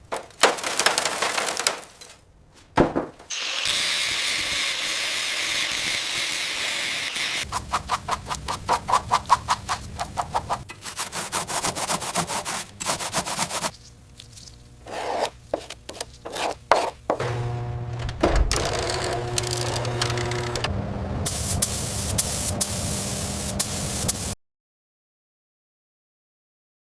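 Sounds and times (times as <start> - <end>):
knocks: 2.8 - 3.3
steady mechanical hum: 3.8 - 24.4.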